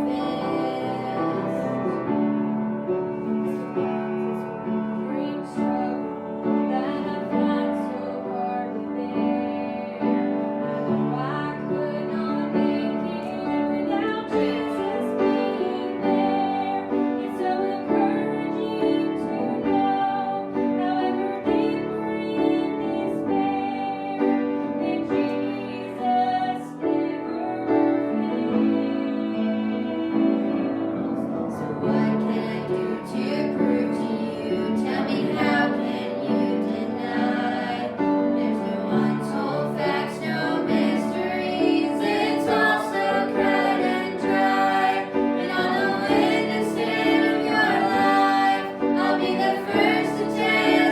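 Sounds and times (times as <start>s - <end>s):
woman singing: 0.0s - 2.0s, 5.0s - 10.4s, 11.1s - 50.9s
piano accompaniment: 0.0s - 50.9s.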